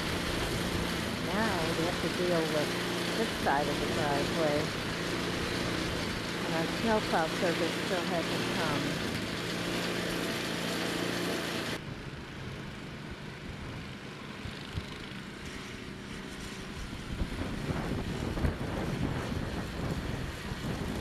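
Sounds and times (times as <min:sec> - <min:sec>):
engine humming: 0:00.0 - 0:11.8
wind buffeting microphone: 0:16.9 - 0:21.0.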